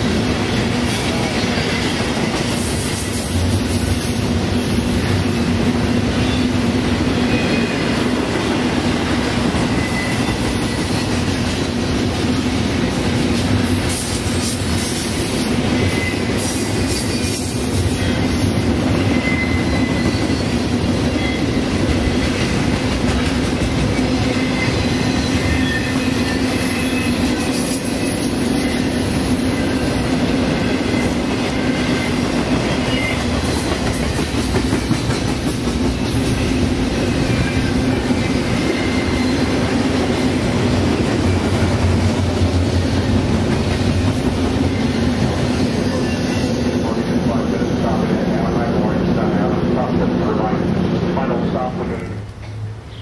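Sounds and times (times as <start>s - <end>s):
train cars rumbling on rails: 0.0s - 53.0s
faint high wheel squeal: 9.7s - 10.9s, 15.7s - 17.4s, 18.0s - 22.2s, 24.3s - 29.9s, 30.7s - 33.3s, 37.2s - 39.5s, 45.8s - 47.0s.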